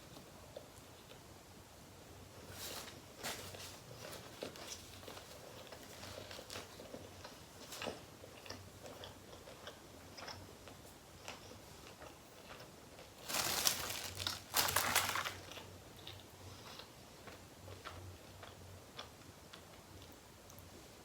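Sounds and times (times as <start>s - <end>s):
crackling eating noises: 2.3s - 21.0s.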